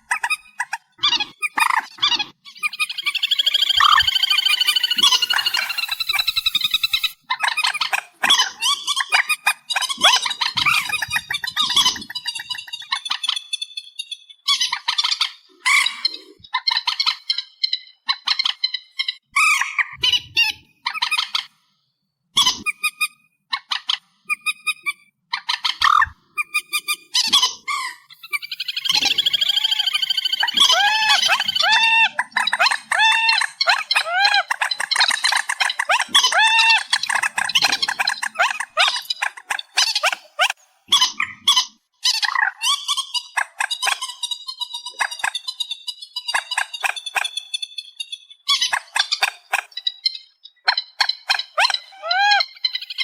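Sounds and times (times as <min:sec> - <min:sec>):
harsh squawking bird calls: 0:00.0 - 0:12.8, 0:25.7 - 0:45.5.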